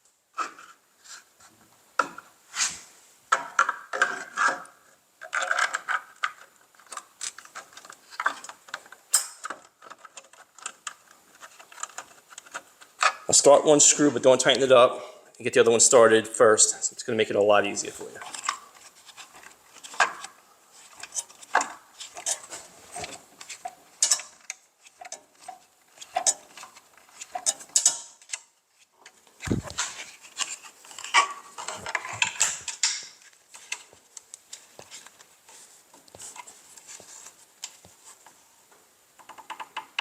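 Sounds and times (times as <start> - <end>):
allen key clicking and scraping: 18.2 - 28.5.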